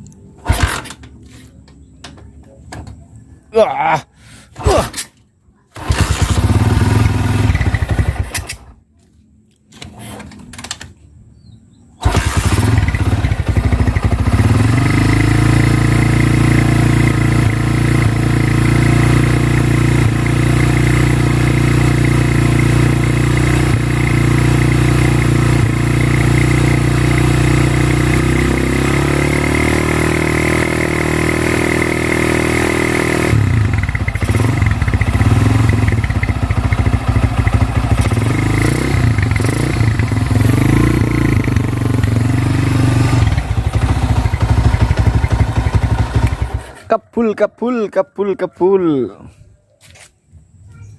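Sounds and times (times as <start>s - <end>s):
small motorcycle engine running: 5.8s - 8.7s, 12.0s - 46.8s.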